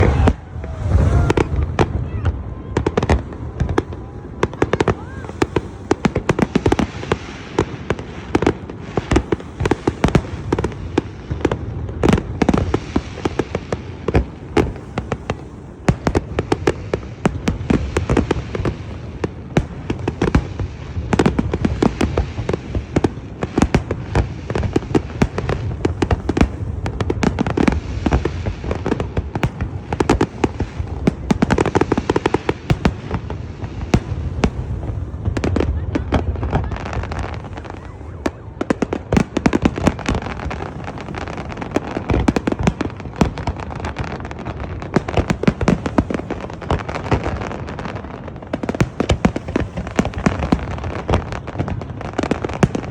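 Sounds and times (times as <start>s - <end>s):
steady rumble: 0.0s - 4.4s
fireworks bangs and crackling: 0.0s - 52.9s.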